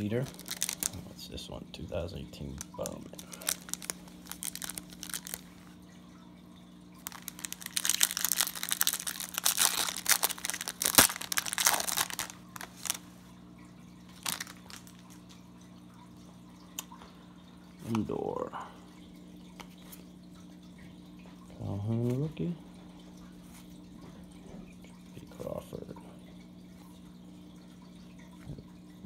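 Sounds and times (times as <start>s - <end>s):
plastic wrapper crinkling and tearing: 0.0s - 1.1s, 2.5s - 5.6s, 7.0s - 13.1s, 14.1s - 15.4s.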